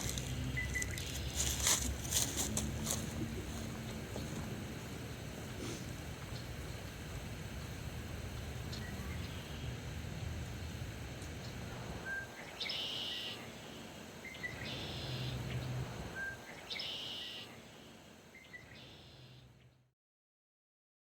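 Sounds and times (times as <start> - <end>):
bird singing buzzy song: 0.0 - 1.9, 6.2 - 19.9
outdoor background noise: 0.0 - 19.9.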